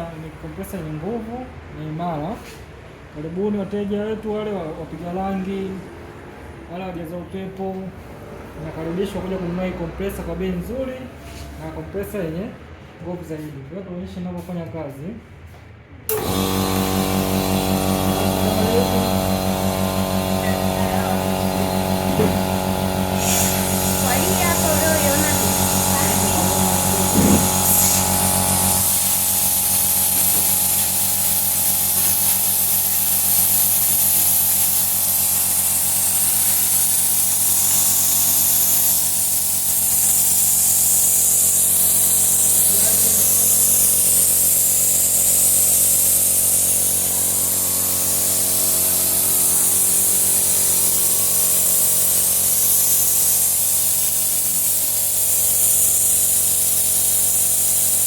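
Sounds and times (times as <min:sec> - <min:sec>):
air compressor motor hum: 0:16.0 - 0:58.0
air hissing: 0:16.1 - 0:58.0.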